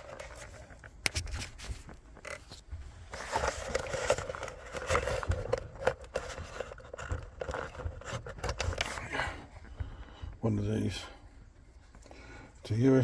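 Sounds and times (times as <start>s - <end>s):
hands handling small adapter: 0.0s - 9.0s.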